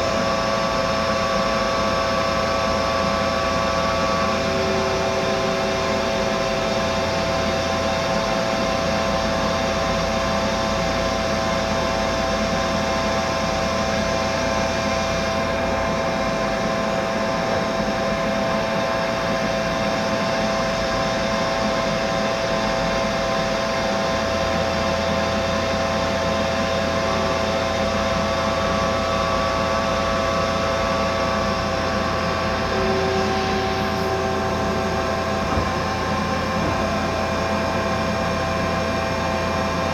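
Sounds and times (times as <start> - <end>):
machine whining tones: 27.1 - 39.9.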